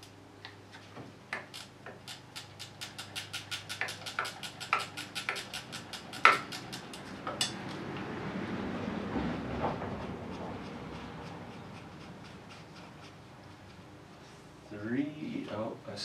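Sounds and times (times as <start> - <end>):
ratcheting wrench clicking: 1.3 - 7.6
metallic clacks: 1.3 - 7.8.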